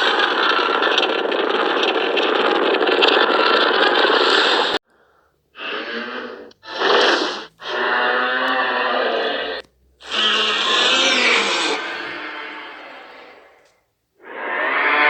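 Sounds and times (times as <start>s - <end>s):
monster roaring: 5.6s - 13.6s.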